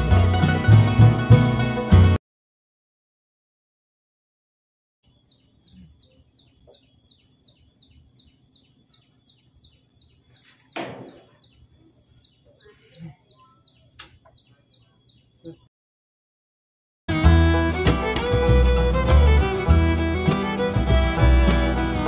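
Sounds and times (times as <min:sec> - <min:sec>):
small bird chirping: 0:05.0 - 0:15.7.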